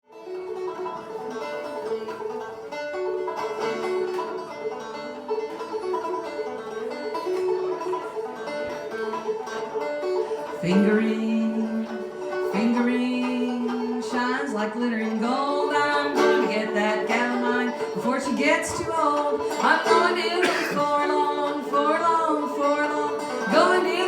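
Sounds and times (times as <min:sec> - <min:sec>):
plucked acoustic string instrument: 0:00.0 - 0:24.0
person singing: 0:10.6 - 0:24.0.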